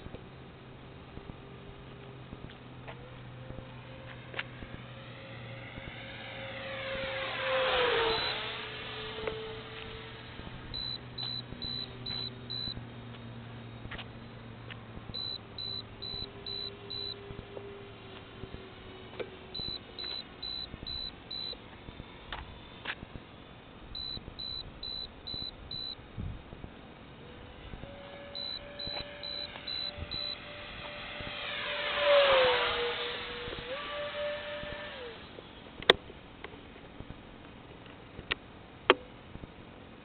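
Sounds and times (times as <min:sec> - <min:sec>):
rc jet fans passing by: 0:00.0 - 0:38.2
high electronic beeps: 0:10.7 - 0:12.8, 0:15.2 - 0:17.2, 0:19.6 - 0:21.6, 0:24.0 - 0:26.0, 0:28.4 - 0:30.4.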